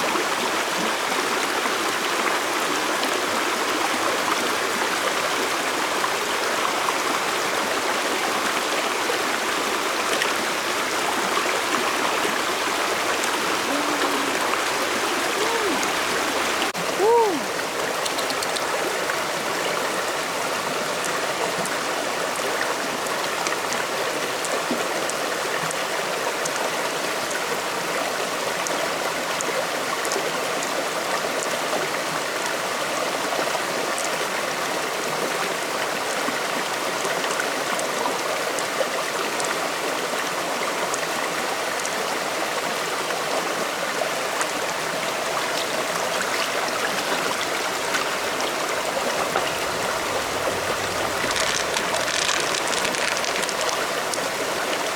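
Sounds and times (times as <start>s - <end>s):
stream water rushing: 0.0s - 54.9s
faint small splashes: 45.6s - 54.9s.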